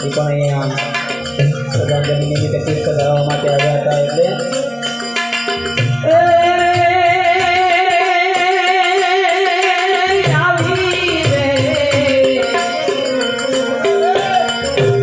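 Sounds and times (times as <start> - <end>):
harmonium melody: 0.0 - 15.0
tabla strokes: 0.0 - 15.0
person singing wavering note: 12.3 - 15.0.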